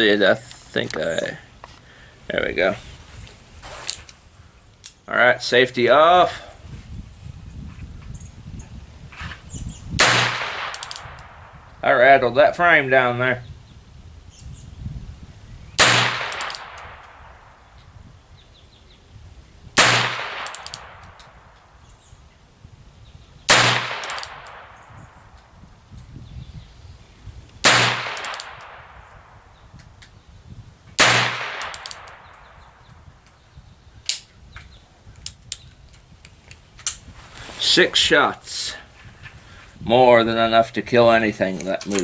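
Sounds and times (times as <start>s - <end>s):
small metallic clicks: 10.7s - 11.3s, 16.3s - 17.2s, 20.4s - 21.7s, 24.0s - 24.6s, 28.1s - 28.8s, 31.6s - 32.2s, 34.0s - 37.0s.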